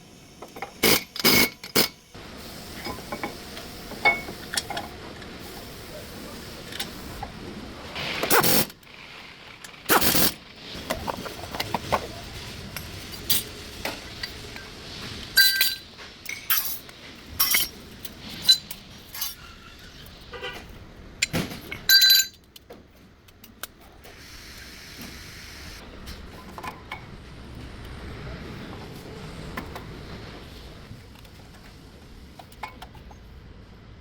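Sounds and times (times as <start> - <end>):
metal tools clinking together: 15.4 - 17.8, 21.7 - 22.6.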